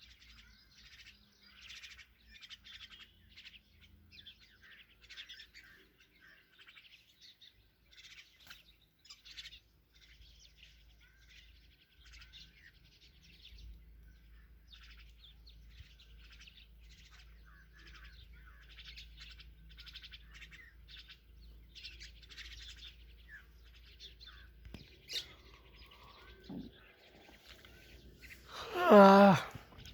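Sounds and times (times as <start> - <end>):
mynas chirping: 21.9 - 29.9.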